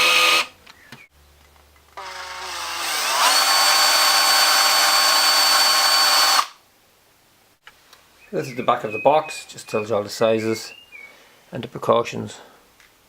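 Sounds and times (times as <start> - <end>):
electric drill motor whine: 0.0 - 0.5, 2.0 - 6.6.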